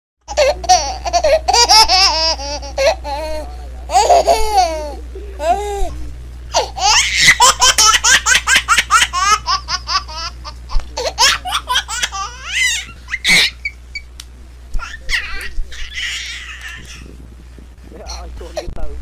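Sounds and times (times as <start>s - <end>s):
high-pitched laughter: 11.2s - 13.8s.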